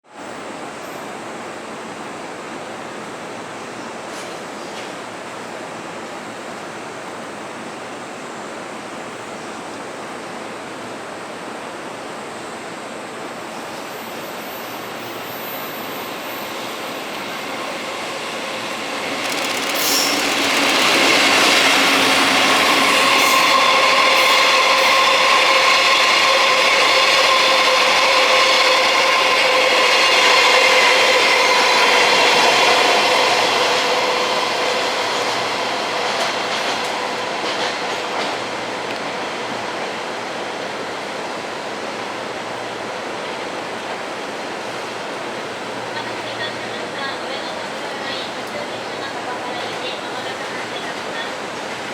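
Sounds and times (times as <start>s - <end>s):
locomotive whine: 13.1s - 51.9s
train wheels rumbling: 14.8s - 51.9s.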